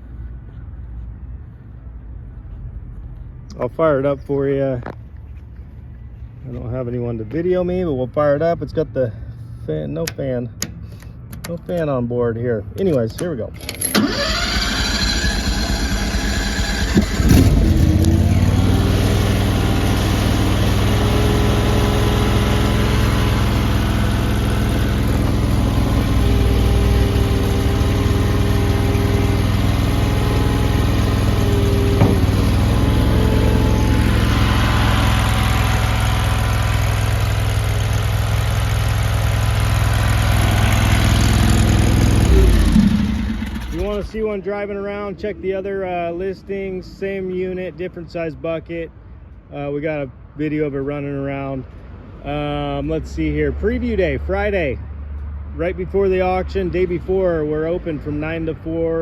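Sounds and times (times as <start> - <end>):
engine starting and running: 12.8 - 44.4.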